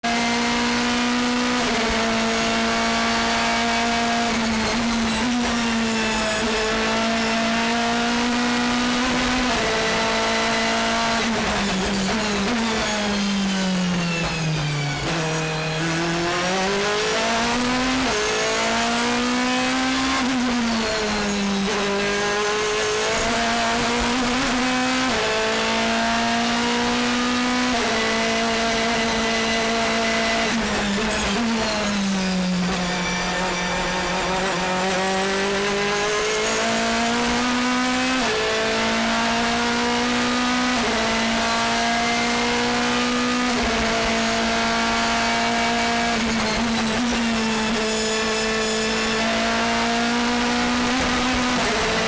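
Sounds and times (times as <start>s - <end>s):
race car engine at high revs: 0.0s - 52.0s.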